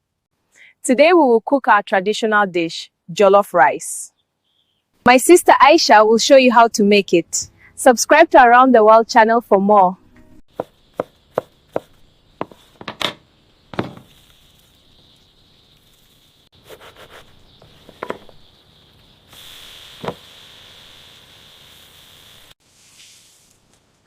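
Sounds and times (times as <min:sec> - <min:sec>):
sharp knocks: 0:10.5 - 0:14.1
steady hiss: 0:10.6 - 0:24.0
faint scrapes: 0:22.6 - 0:23.7.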